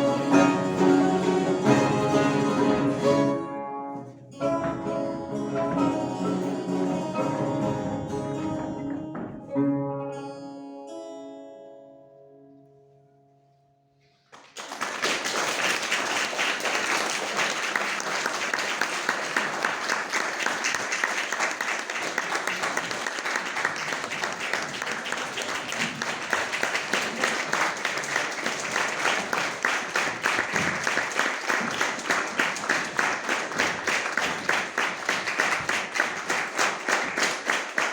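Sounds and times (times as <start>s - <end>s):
mandolin ensemble plucked notes: 0.0s - 14.1s
audience applause: 14.3s - 37.9s.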